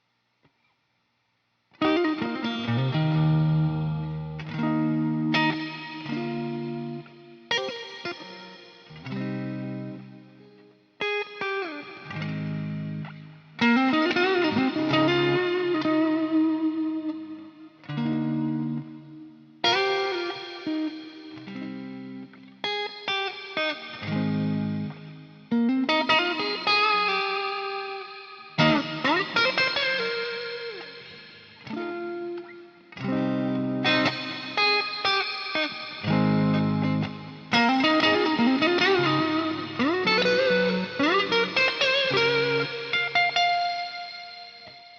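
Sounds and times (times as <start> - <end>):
overdriven electric guitar: 1.7 - 44.9.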